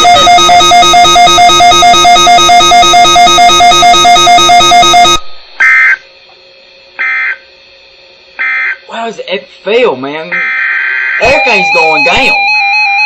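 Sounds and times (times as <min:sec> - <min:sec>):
pulsing electronic buzz: 0:00.0 - 0:09.4.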